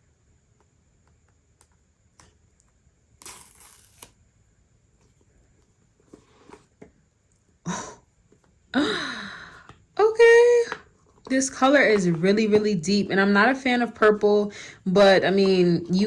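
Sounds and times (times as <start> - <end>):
paper strip tearing: 3.2 - 4.2.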